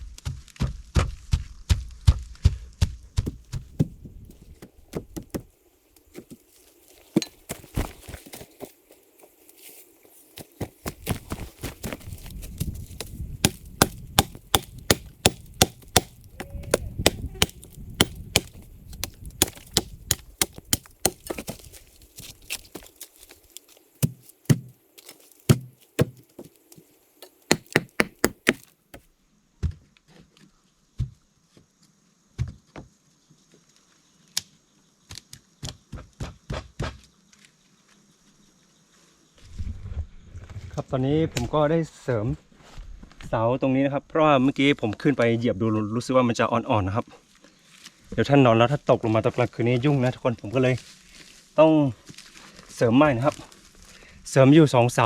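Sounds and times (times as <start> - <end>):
tool knocking on wood: 3.2 - 4.0, 4.6 - 5.5, 13.0 - 21.8, 24.0 - 26.6, 27.2 - 28.7.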